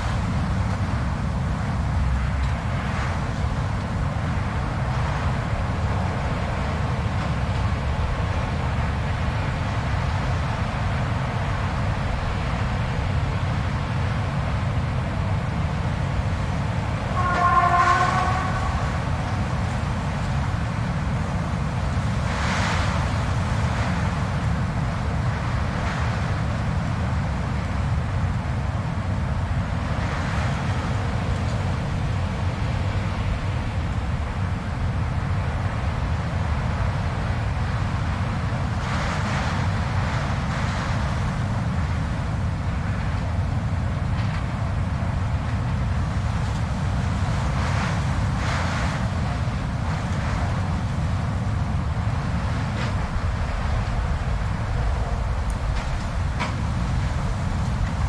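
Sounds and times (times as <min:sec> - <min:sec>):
blizzard wind blowing: 0:00.0 - 0:58.0.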